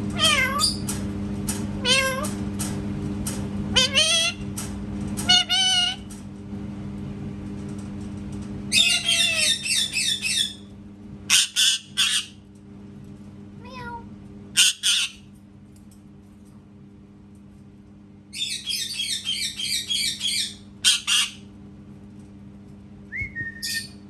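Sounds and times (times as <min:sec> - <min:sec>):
parrot calling: 0:00.2 - 0:00.8, 0:01.8 - 0:02.3, 0:03.7 - 0:04.4, 0:05.3 - 0:06.0, 0:08.7 - 0:10.7, 0:11.3 - 0:12.4, 0:14.6 - 0:15.3, 0:18.3 - 0:21.4, 0:23.6 - 0:24.0
parrot squawks: 0:00.2 - 0:00.8, 0:03.8 - 0:04.4, 0:08.7 - 0:10.6, 0:11.3 - 0:12.4, 0:14.6 - 0:15.2, 0:18.4 - 0:21.4.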